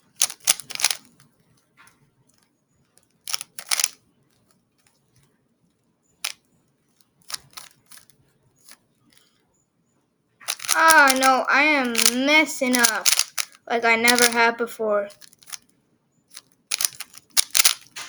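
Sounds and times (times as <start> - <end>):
puzzle cube plastic clicks: 0.0 - 1.3, 3.3 - 4.0, 7.2 - 8.8, 10.4 - 14.5, 15.1 - 15.7, 16.3 - 18.0.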